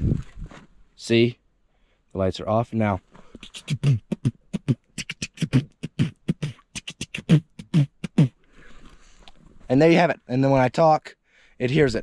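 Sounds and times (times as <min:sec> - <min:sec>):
man beatboxing: 0:03.4 - 0:08.4.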